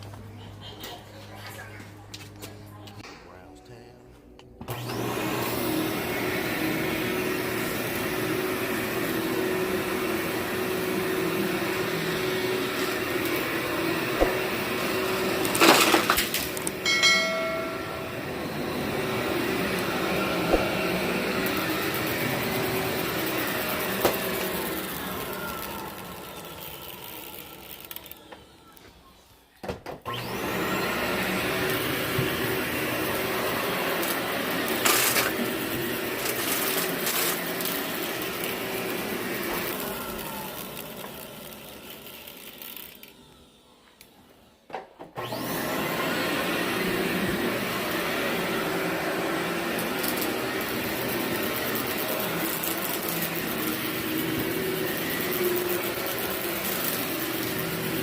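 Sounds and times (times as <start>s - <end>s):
vacuum cleaner running: 4.6s - 58.0s
grit crunching in vacuum: 30.9s - 43.1s, 46.6s - 58.0s.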